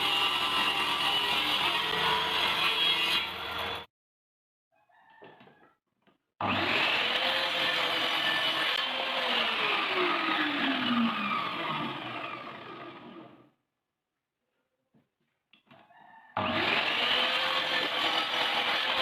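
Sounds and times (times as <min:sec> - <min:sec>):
power tool running on wood: 0:06.4 - 0:13.4, 0:16.4 - 0:19.0.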